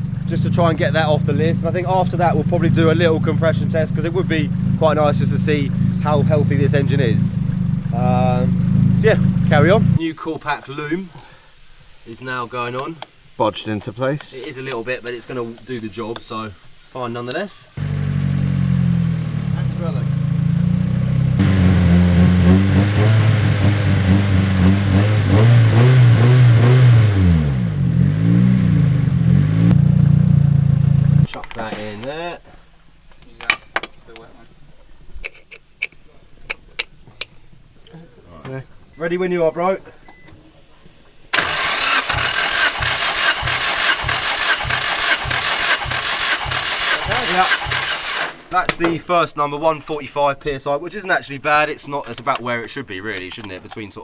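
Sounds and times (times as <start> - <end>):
car engine revving: 0.0 - 31.3, 41.3 - 48.8.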